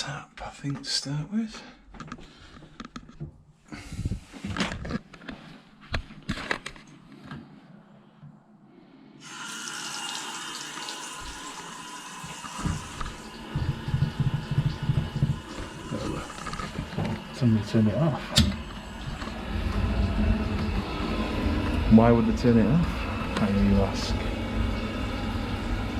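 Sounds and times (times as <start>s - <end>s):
water running into sink: 9.2s - 25.9s
knocks and clicks: 12.7s - 15.9s.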